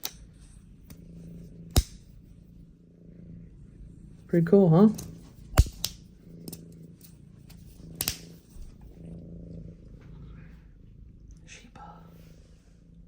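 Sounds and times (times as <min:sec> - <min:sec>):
cat purring: 0:00.0 - 0:13.0
sharp clicks: 0:04.9 - 0:06.0.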